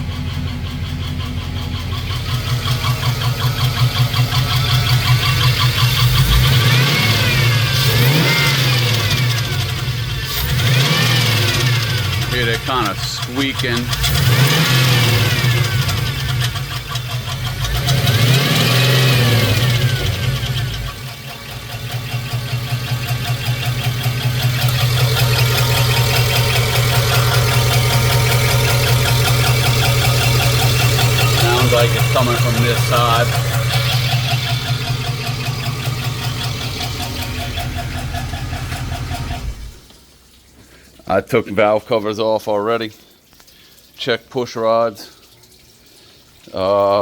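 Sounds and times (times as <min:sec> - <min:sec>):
rhythmic squeaking tick: 0:00.0 - 0:06.7, 0:19.5 - 0:40.0
car engine running: 0:00.0 - 0:40.1.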